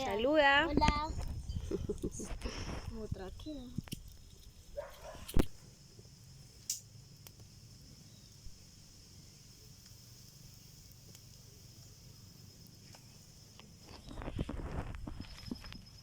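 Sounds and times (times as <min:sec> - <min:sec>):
night insects chirring: 0:00.0 - 0:16.0.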